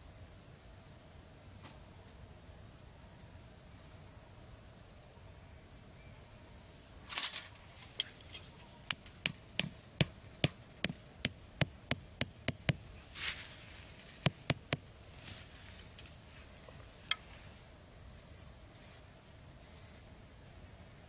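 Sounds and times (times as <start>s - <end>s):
rustle or scrape: 6.4s - 9.2s, 13.0s - 14.3s, 15.0s - 20.3s
sharp knocks of tool tapping: 8.9s - 12.9s, 14.2s - 14.9s.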